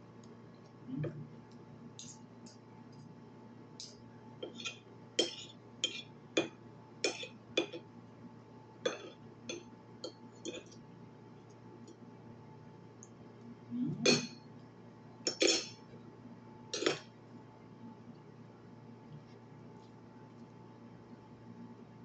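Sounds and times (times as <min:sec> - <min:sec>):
cutlery clinking against dish: 0:15.3 - 0:15.8, 0:16.8 - 0:17.1.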